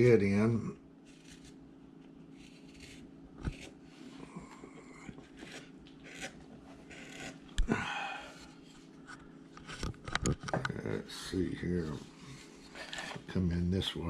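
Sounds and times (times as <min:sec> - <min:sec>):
carving tool scraping wood: 0:01.0 - 0:01.6, 0:02.3 - 0:03.9, 0:04.8 - 0:07.6, 0:12.2 - 0:13.2.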